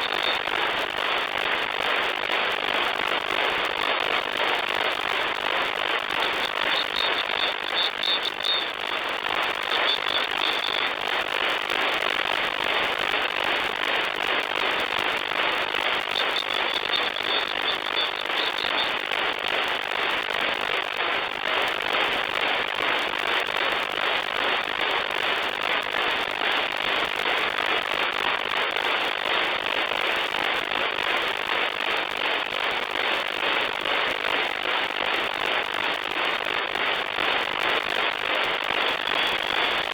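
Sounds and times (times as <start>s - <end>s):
radio static hiss and crackling: 0.0s - 39.9s
faint high tones: 16.1s - 19.0s.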